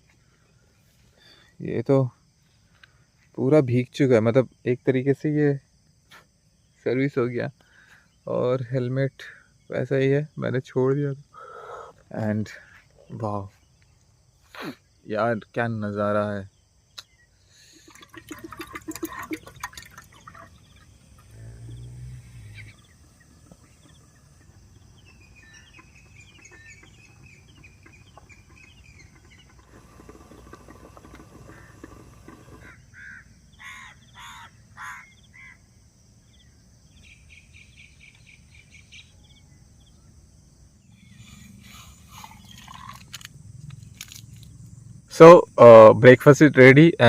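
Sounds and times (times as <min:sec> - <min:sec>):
birds chirping and calling: 0:19.0 - 0:35.6, 0:40.9 - 0:43.1
bird trill: 0:22.3 - 0:30.5, 0:31.4 - 0:35.6.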